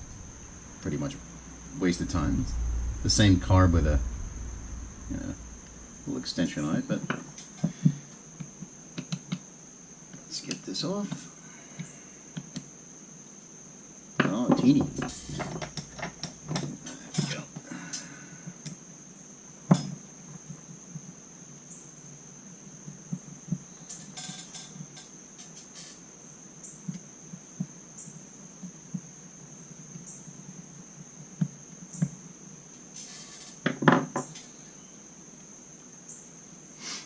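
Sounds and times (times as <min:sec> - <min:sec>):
steady high-pitched tone: 0:00.0 - 0:06.6.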